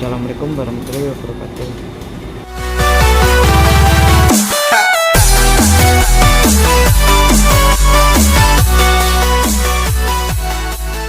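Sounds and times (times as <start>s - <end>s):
electronic music with steady beat: 2.5s - 11.0s
falling synth-drum sweeps: 5.2s - 10.3s.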